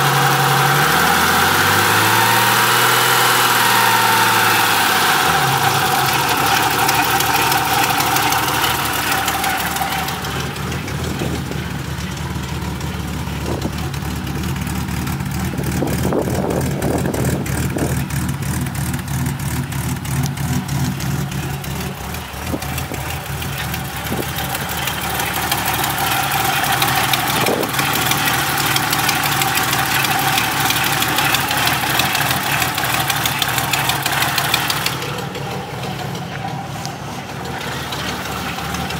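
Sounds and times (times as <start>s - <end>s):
engine idling: 0.0s - 38.9s
fast even ticking: 21.5s - 35.2s.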